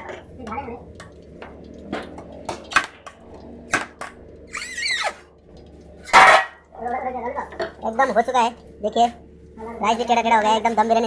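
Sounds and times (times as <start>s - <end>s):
steady low hum: 0.0s - 11.0s
squealing scrape: 4.5s - 5.2s.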